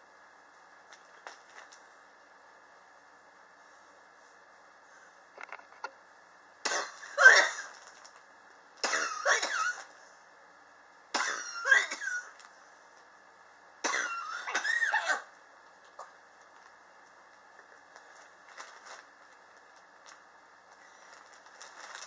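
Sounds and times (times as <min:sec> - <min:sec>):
person coughing: 0:06.7 - 0:07.8, 0:08.8 - 0:09.9, 0:11.2 - 0:12.4, 0:13.8 - 0:15.3.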